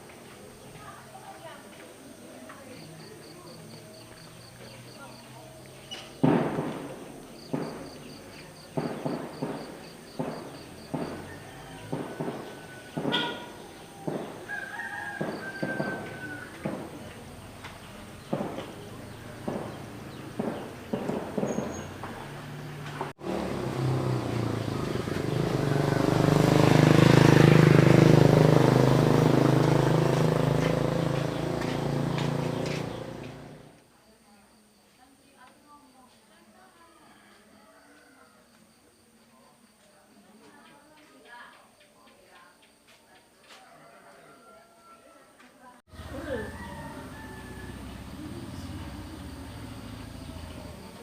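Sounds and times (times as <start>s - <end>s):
vehicle engine passing by: 0.2s - 33.8s, 45.9s - 51.0s.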